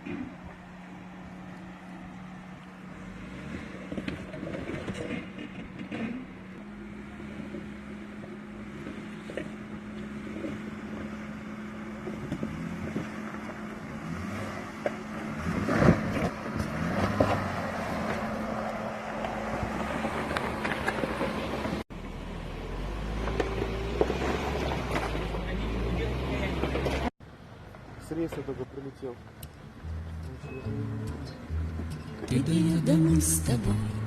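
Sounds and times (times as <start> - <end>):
off-road vehicle engine running: 0.0 - 34.0.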